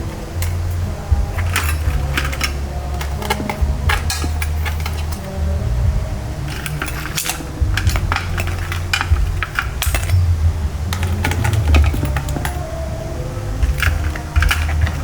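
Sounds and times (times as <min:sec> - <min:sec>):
low steady rumble: 0:00.0 - 0:15.0
utensils and dishes clinking: 0:00.0 - 0:15.0.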